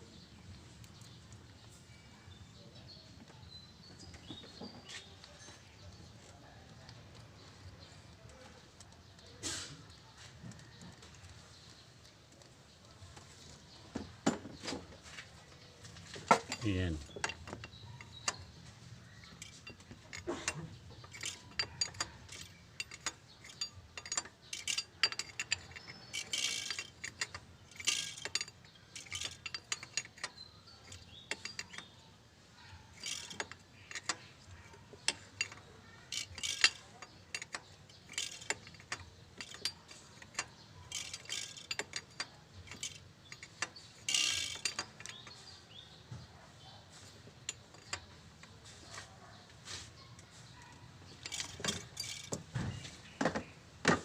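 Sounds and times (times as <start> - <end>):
metal tool clicks and clinks: 16.0 - 49.3, 50.1 - 54.0
ratchet clicking: 16.3 - 32.1, 32.9 - 45.4, 51.2 - 52.4.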